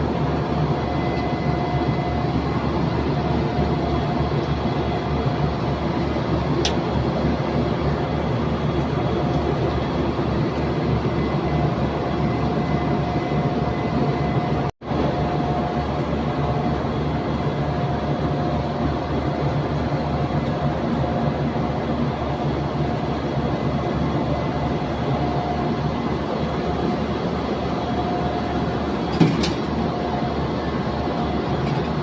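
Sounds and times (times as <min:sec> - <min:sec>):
compressor low drone: 0:00.0 - 0:32.0.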